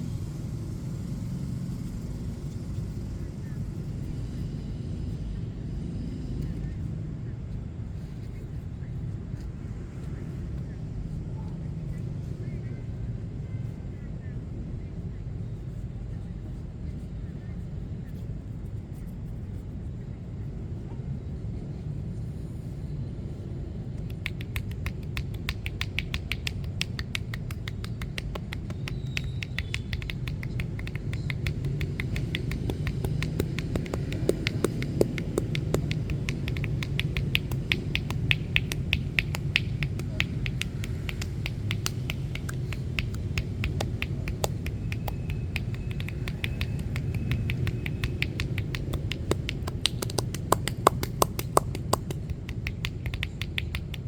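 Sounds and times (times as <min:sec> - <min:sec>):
steady low hum: 0:00.0 - 0:05.7
hands slapping on skin: 0:24.0 - 0:54.0.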